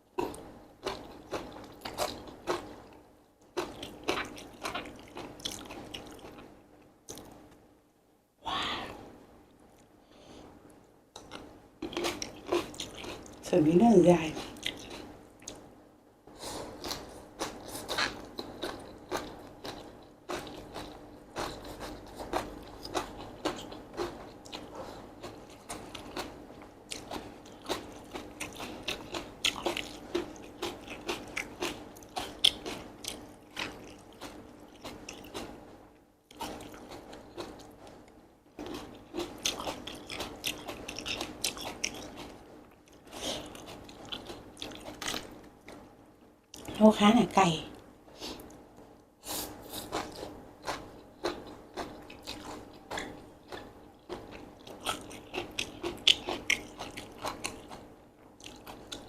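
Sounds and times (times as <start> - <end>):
chewing with wet mouth clicks: 14.4 - 15.6, 16.8 - 35.5, 38.6 - 45.8, 49.9 - 57.8, 58.4 - 59.0.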